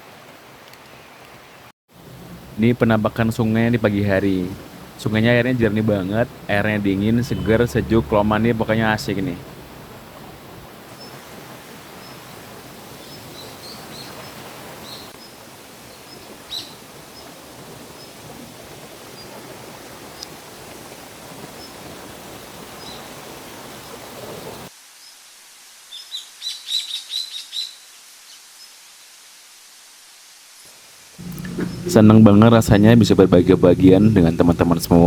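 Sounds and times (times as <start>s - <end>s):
shallow river rushing: 2.0s - 24.7s, 31.2s - 35.0s.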